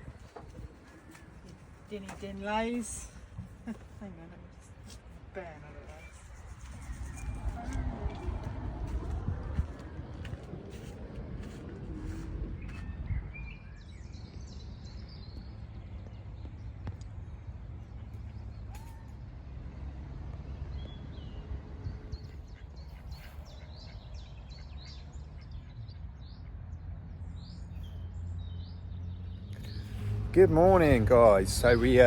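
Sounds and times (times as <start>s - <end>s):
low rumble: 6.0s - 17.5s
small birds chirping: 12.6s - 19.3s, 20.5s - 32.0s.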